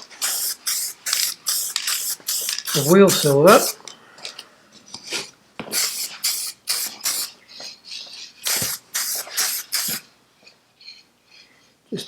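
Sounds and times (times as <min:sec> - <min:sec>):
aerosol can spraying: 0:00.1 - 0:03.8, 0:05.7 - 0:07.3, 0:08.4 - 0:10.0.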